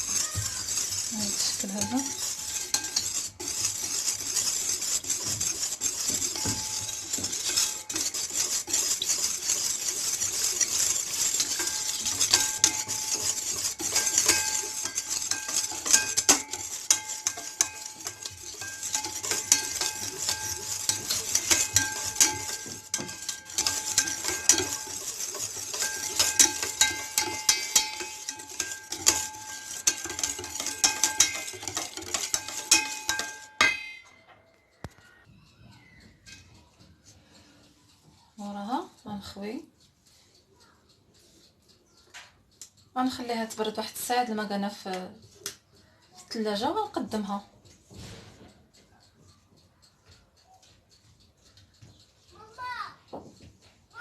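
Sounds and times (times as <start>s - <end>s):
utensil scraping round a bowl: 0.0s - 34.0s
utensil clinking against bowl: 0.0s - 34.2s.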